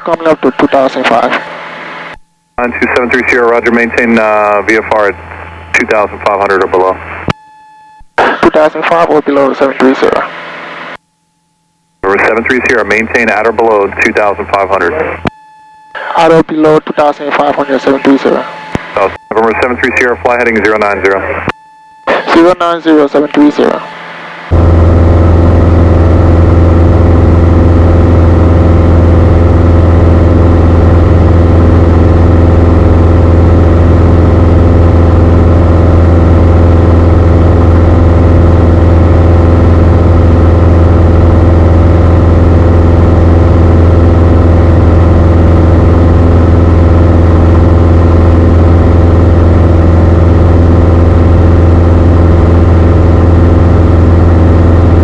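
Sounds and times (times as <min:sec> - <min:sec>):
aircraft engine and propeller droning: 0:23.8 - 0:55.0.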